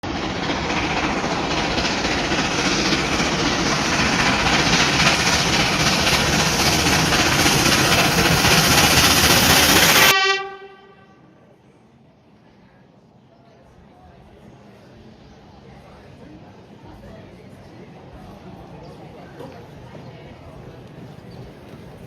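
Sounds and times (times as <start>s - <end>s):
train passing at speed: 0.0s - 22.0s.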